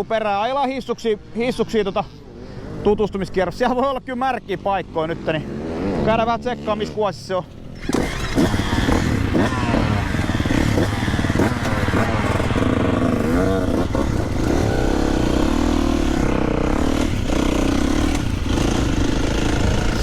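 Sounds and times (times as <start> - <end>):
motocross bike engine revving: 4.8 - 20.0.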